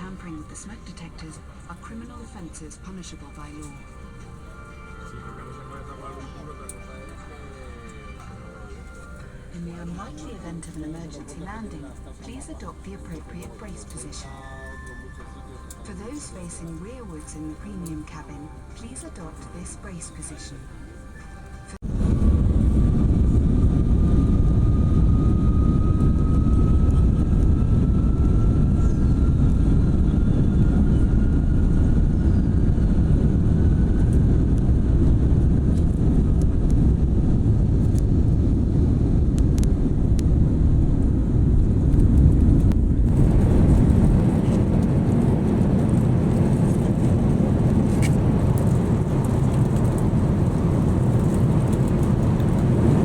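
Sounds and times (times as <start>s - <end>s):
jet engines rumbling in cabin: 0.0s - 53.0s
thin whine rising in pitch: 21.8s - 53.0s.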